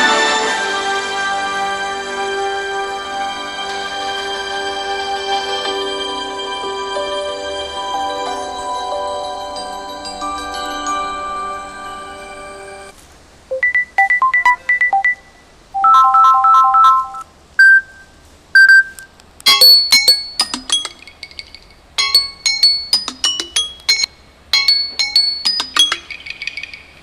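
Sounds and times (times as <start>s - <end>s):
sustained chord: 0.0s - 12.9s
three-note chime: 3.4s - 12.9s
bright clinking chime melody: 4.5s - 12.9s, 19.5s - 26.9s
quick beeps: 13.5s - 20.5s.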